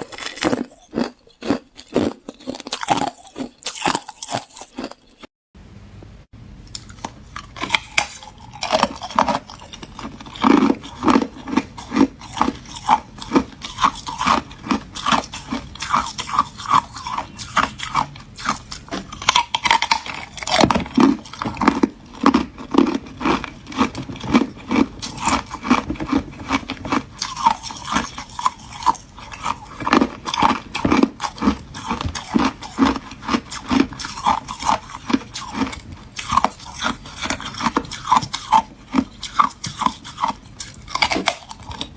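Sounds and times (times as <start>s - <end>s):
ice being chewed: 0.0s - 5.3s, 6.7s - 41.9s.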